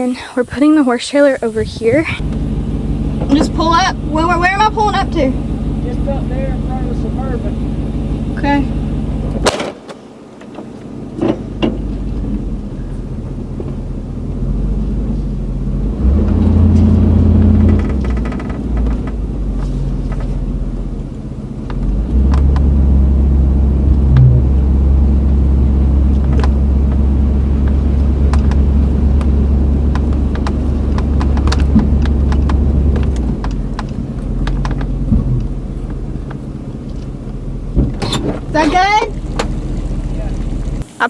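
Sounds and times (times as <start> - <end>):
vehicle engine rumbling: 0.0 - 41.0
light rattles and clicks: 16.1 - 23.1, 23.8 - 40.8.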